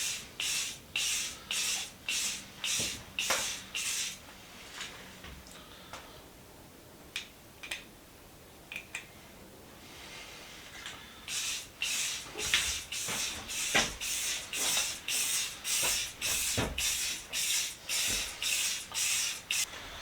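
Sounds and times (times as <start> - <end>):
spray paint can hissing: 0.0 - 4.2, 11.3 - 19.7.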